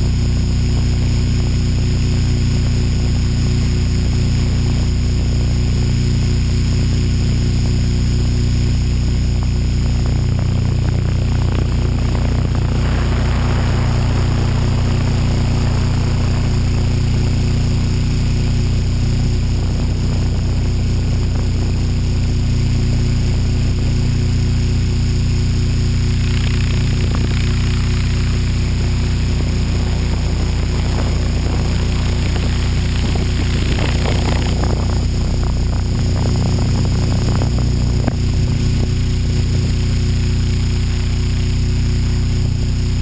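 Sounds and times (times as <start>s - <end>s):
model helicopter rotor hum: 0.0s - 43.0s
rush of air noise: 1.4s - 43.0s.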